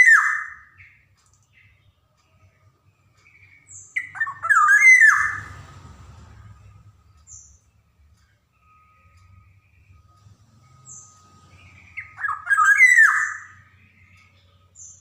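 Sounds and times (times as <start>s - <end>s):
oriole whistled and harsh call: 0.0s - 1.0s, 3.3s - 5.6s, 10.8s - 15.0s
faint high bird chirps: 0.0s - 5.6s, 6.4s - 15.0s.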